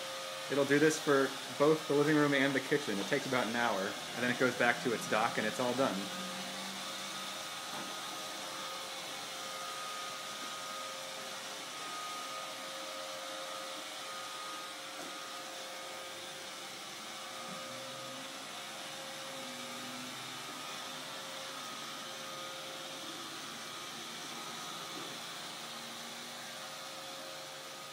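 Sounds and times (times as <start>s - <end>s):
robot vacuum whirring: 0.0s - 27.9s.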